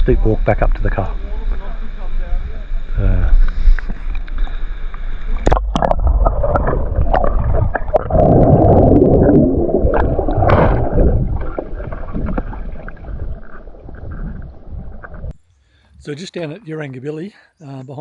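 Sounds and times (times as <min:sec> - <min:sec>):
water splashing in pool: 0:05.3 - 0:15.3.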